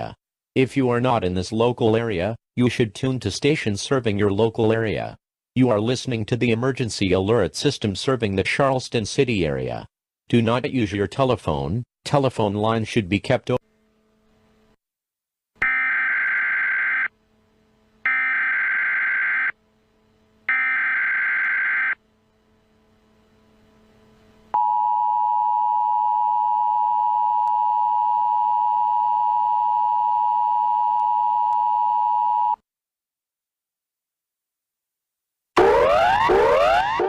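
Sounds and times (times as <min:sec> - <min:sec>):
steady two-tone alert signal: 0:35.6 - 0:37.0.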